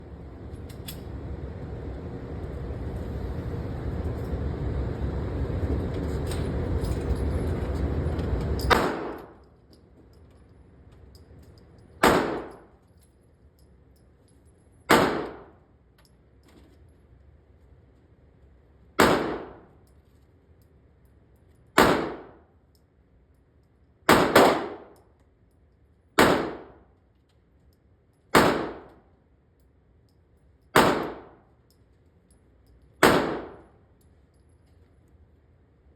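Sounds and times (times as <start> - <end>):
pistol shots echoing indoors: 8.7 - 9.4, 12.0 - 12.7, 14.9 - 15.6, 19.0 - 19.7, 21.8 - 22.4, 24.1 - 25.0, 26.2 - 26.8, 28.3 - 29.0, 30.7 - 31.5, 33.0 - 33.8.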